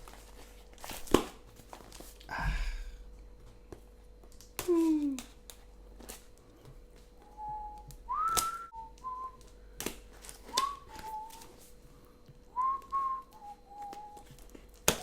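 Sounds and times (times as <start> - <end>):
person whistling a tune: 7.2 - 9.5, 10.5 - 11.6, 12.5 - 14.3.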